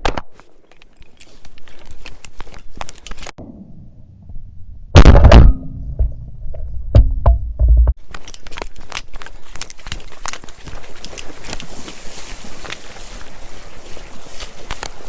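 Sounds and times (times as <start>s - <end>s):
small clicks and rustling: 0.0s - 3.4s, 8.0s - 15.0s
low rumbling: 3.4s - 8.0s
loud blast-like thump: 4.9s - 6.2s.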